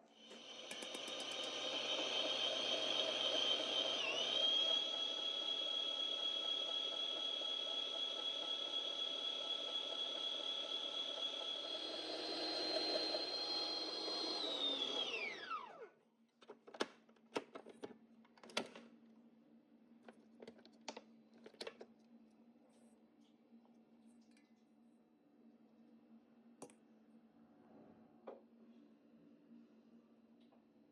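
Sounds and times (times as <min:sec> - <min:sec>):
electric blender running: 0:00.2 - 0:16.0.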